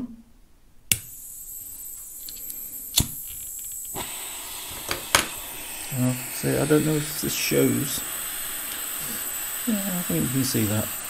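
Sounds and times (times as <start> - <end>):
sharp clicks: 0.9 - 1.1, 2.2 - 4.0
gas soldering iron flame hissing: 0.9 - 11.0.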